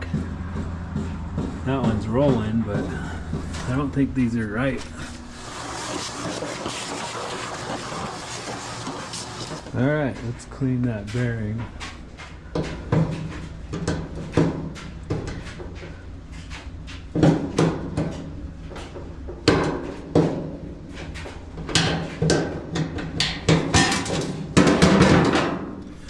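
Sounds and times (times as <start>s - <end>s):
hand tools knocking and scraping: 0.0s - 4.0s, 5.4s - 10.3s, 21.1s - 25.6s
steady low hum: 0.0s - 24.7s.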